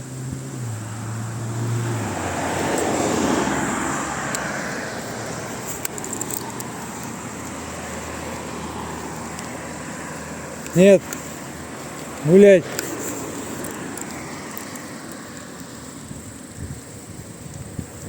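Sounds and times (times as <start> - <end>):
vehicle passing by: 0.0 - 18.0.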